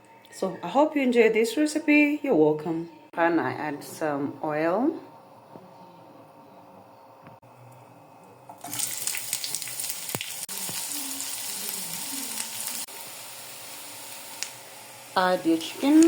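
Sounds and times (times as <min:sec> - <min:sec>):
food sizzling in hot oil: 0:08.5 - 0:16.0.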